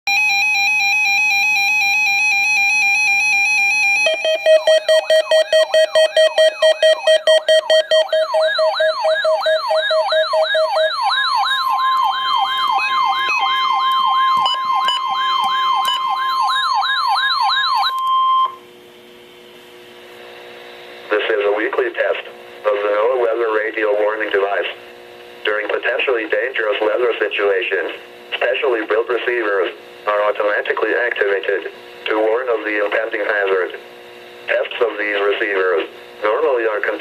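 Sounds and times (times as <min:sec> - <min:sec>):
siren wailing up and down: 0:00.1 - 0:18.6
steady warning tone: 0:00.1 - 0:18.7
warbling electronic tone: 0:03.6 - 0:18.6.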